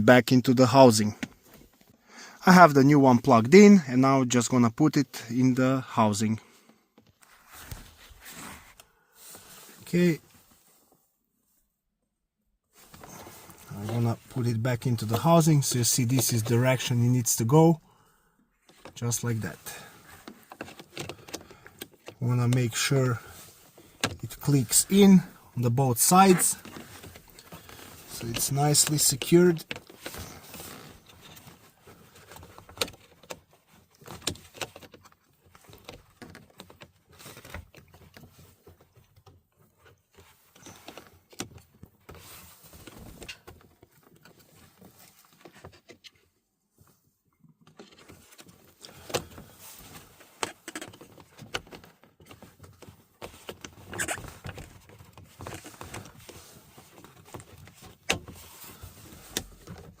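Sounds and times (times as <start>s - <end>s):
hard plastic clicking and rattling: 20.0s - 22.2s, 47.6s - 60.0s.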